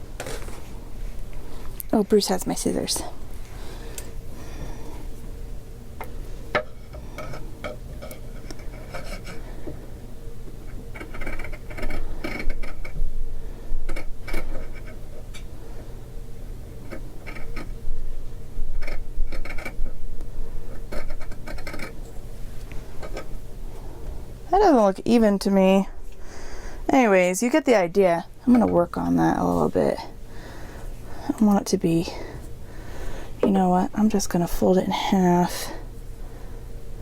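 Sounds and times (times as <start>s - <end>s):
low room hum: 0.0s - 37.0s.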